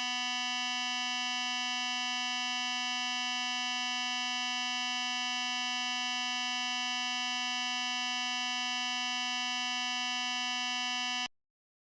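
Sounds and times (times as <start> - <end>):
buzzer-like electronic hum: 0.0 - 11.3.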